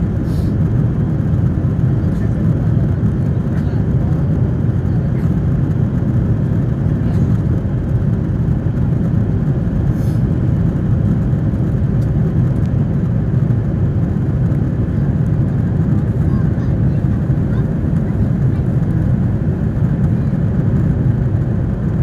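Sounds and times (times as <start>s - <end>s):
airliner cabin low rumble: 0.0s - 22.0s.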